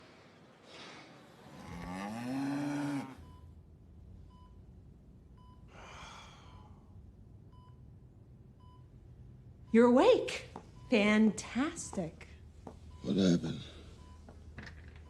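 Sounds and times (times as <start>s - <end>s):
soft breath: 5.7s - 6.9s
heart monitor beeping: 11.8s - 15.0s.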